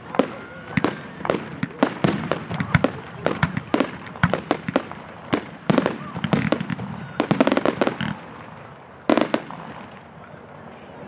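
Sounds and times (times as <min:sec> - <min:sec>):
firework whistle: 0:00.0 - 0:05.0, 0:05.6 - 0:08.2
fireworks bangs and pops: 0:00.0 - 0:10.2.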